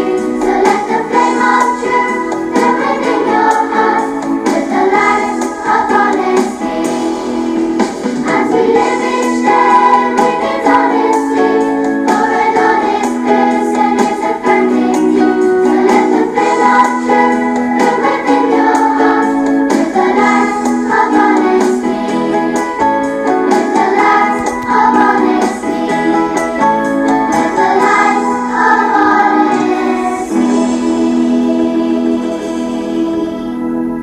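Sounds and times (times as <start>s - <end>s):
keyboard accompaniment: 0.0s - 34.0s
person singing: 23.8s - 34.0s.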